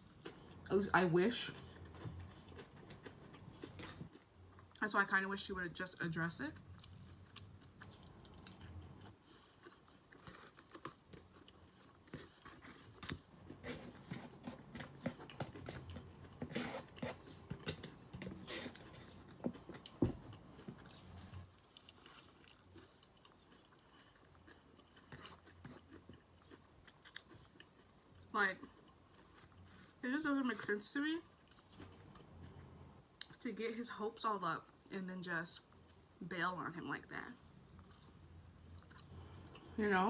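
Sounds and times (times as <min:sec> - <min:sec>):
chewing and biting food: 0:01.4 - 0:04.8, 0:06.6 - 0:30.0, 0:31.3 - 0:33.3, 0:37.5 - 0:39.7
mouth clicks and crunches: 0:01.5 - 0:04.8, 0:06.6 - 0:30.0.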